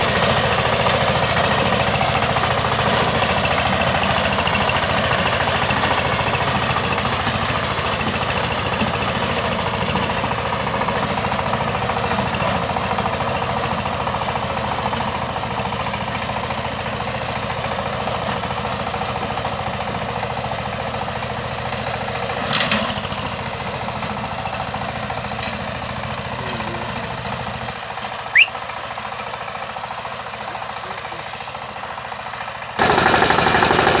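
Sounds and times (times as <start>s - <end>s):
walking tractor engine knocking: 0.0s - 34.0s
loud burst of noise: 32.8s - 34.0s.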